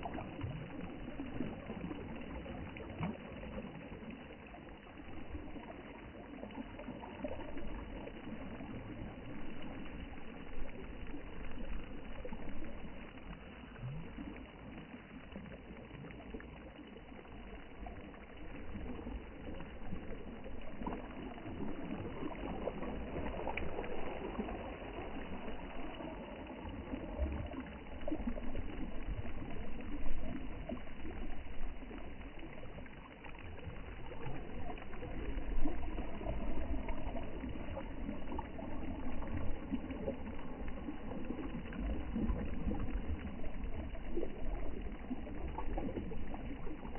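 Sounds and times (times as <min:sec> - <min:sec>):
sea water washing and lapping: 0:00.0 - 0:46.9
low rumble: 0:17.3 - 0:46.9.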